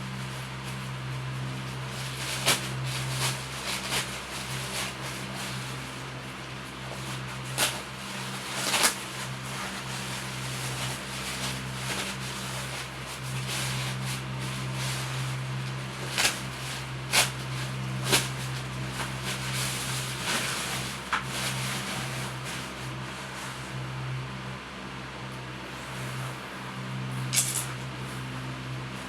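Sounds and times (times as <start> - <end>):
steady low hum: 0.0 - 29.0
packaging rubbing and rustling: 0.2 - 6.0, 6.7 - 23.4.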